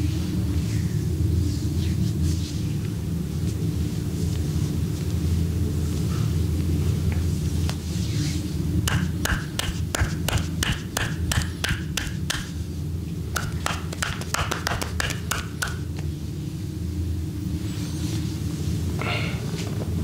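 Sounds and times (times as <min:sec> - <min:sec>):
steady low hum: 0:00.0 - 0:20.0
hands slapping on skin: 0:08.8 - 0:12.6, 0:13.3 - 0:16.1.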